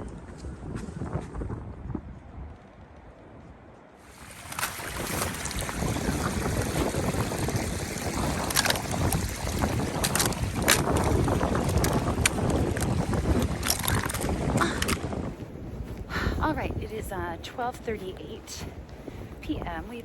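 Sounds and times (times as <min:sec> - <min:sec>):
rushing wind: 0:00.0 - 0:20.0
sharp crackles: 0:08.2 - 0:15.1.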